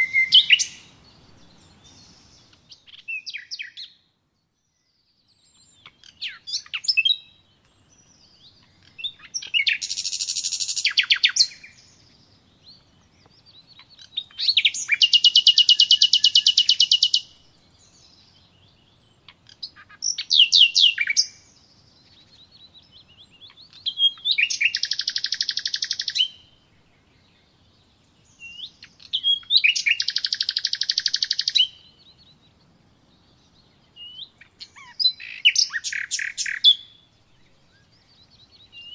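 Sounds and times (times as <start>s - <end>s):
short high bird chirps: 0.0s - 1.0s, 23.7s - 26.4s, 28.5s - 31.8s, 34.1s - 37.0s
songbird trilling: 0.0s - 4.0s, 5.3s - 12.1s, 12.7s - 26.5s, 28.3s - 32.2s, 33.3s - 38.9s.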